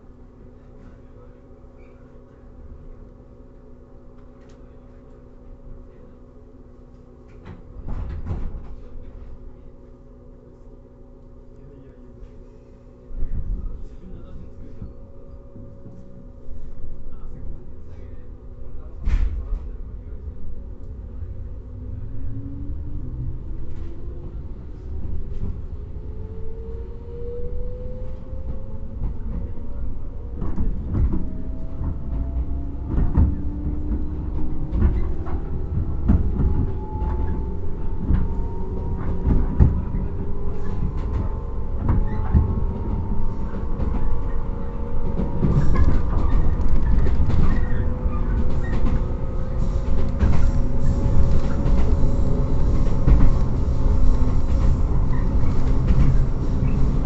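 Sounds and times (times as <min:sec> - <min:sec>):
low train running rumble: 0:00.0 - 0:57.0
rail-joint clacks: 0:07.2 - 0:09.3, 0:28.1 - 0:57.0.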